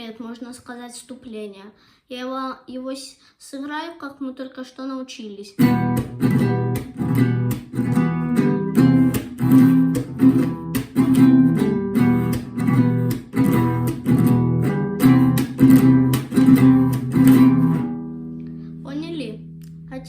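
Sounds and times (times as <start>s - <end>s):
acoustic guitar strumming: 5.6s - 20.0s.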